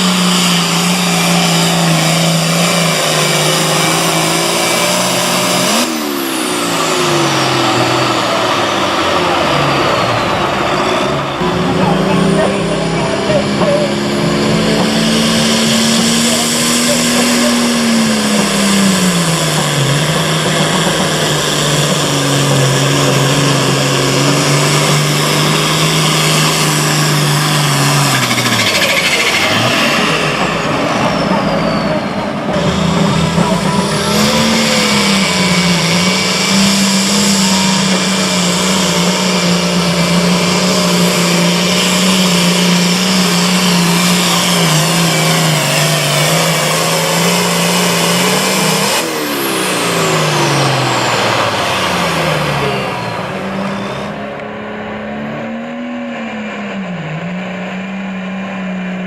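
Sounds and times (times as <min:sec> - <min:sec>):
diesel tractor engine under load: 0:00.0 - 0:59.0
high turbo whistle: 0:23.3 - 0:54.2.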